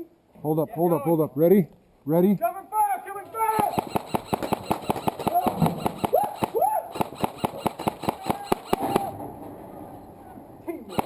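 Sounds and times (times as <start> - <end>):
airsoft guns firing: 3.5 - 9.3.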